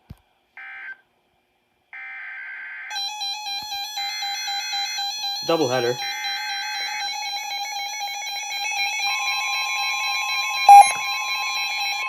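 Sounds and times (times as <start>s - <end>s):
alternating phone alarm tone: 2.9s - 12.0s
higher steady alarm tone: 2.9s - 12.0s.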